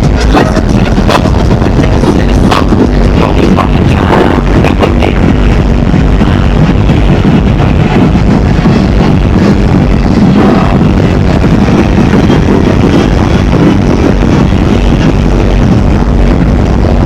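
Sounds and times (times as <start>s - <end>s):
distorted bass-heavy music: 0.0s - 17.0s.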